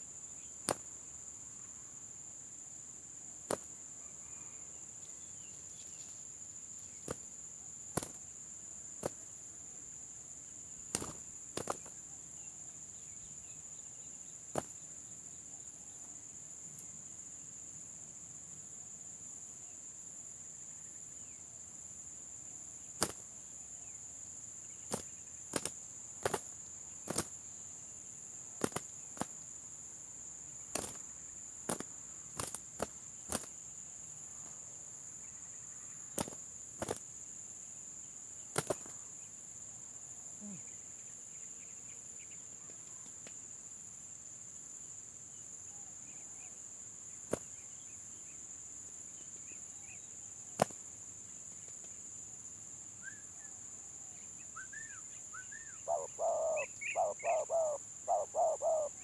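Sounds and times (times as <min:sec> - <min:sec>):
insects droning: 0:00.0 - 0:59.0
faint bird chirps: 0:03.8 - 0:08.4, 0:49.1 - 0:50.6, 0:52.9 - 0:59.0.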